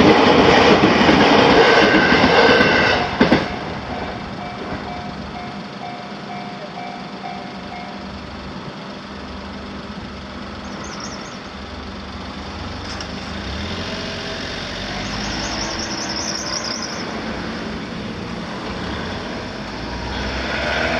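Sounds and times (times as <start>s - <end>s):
passing vehicle rumble: 0.0s - 20.9s
faint high warbling chirps: 10.6s - 11.5s, 14.8s - 17.1s.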